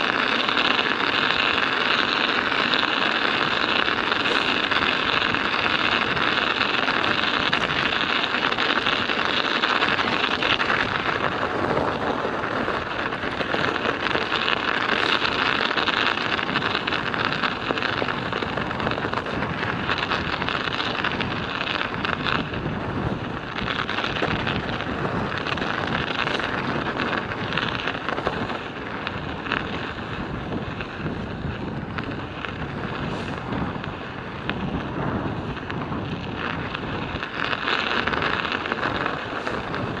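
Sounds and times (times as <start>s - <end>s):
rapid ticking: 0.0s - 30.2s
studded tyres rattling on road: 0.0s - 40.0s
wind buffeting microphone: 0.0s - 40.0s.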